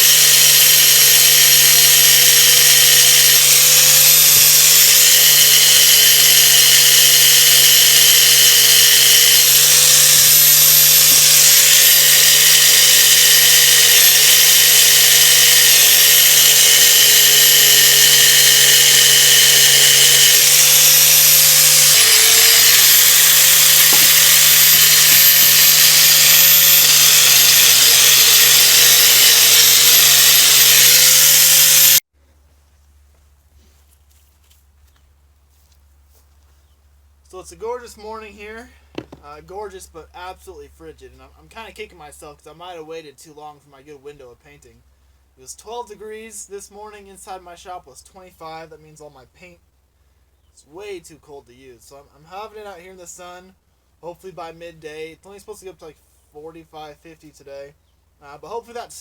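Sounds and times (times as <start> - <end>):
power tool abrasive hiss: 0.0 - 32.1, 39.0 - 39.2.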